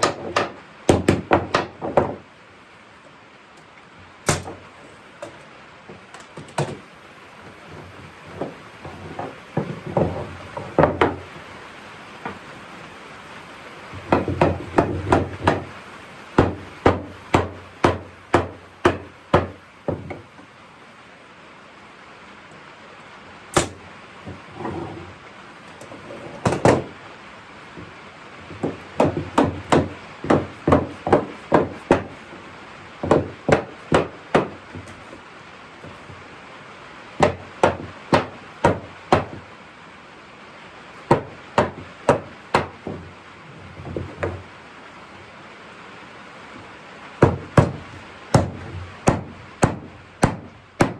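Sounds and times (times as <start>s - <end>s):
hammer striking wood: 0.0s - 2.2s, 4.2s - 6.9s, 8.3s - 11.3s, 13.9s - 15.8s, 16.4s - 20.4s, 23.5s - 25.0s, 25.9s - 27.0s, 28.5s - 35.2s, 37.2s - 39.5s, 41.1s - 43.1s, 43.8s - 44.5s, 47.2s - 50.9s.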